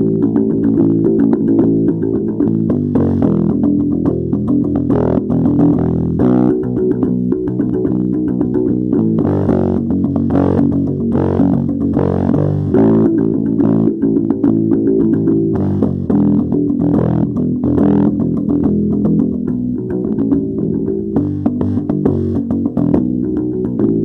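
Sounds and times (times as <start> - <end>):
bass: 0.0 - 24.0
plucked guitar: 0.0 - 24.0.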